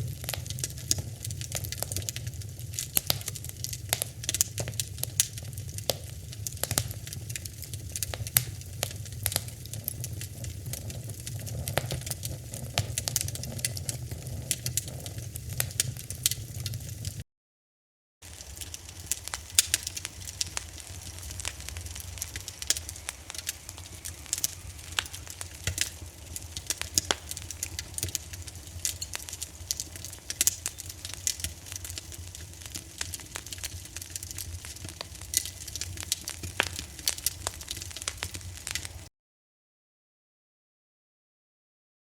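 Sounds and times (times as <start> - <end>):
fire crackling and popping: 0.0 - 17.2, 18.2 - 39.1.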